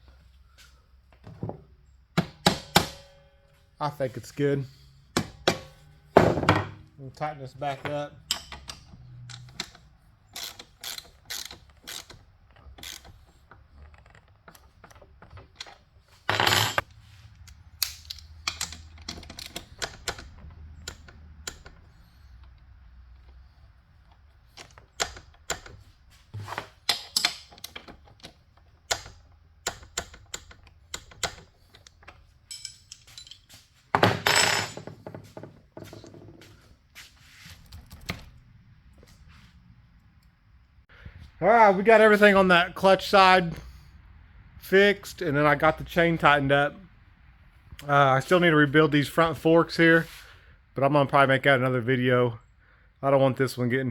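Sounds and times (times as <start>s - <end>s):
ratchet wrench clicking: 10.4s - 12.2s.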